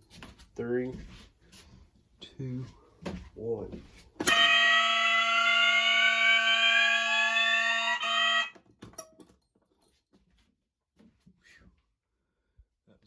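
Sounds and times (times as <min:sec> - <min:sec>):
fire alarm buzzing: 0:04.2 - 0:08.6.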